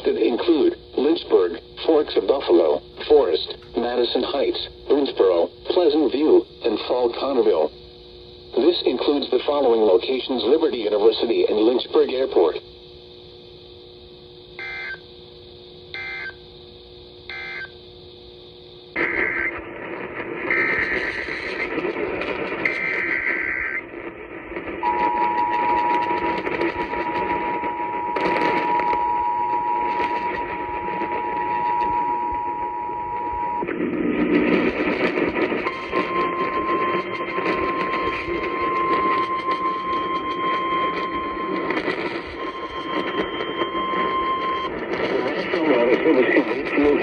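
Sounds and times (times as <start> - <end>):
radio hiss: 0.0 - 47.0
steady warning tone: 0.0 - 47.0
buzzy data bursts: 18.8 - 47.0
two-tone attention signal: 24.8 - 33.6, 35.6 - 45.4.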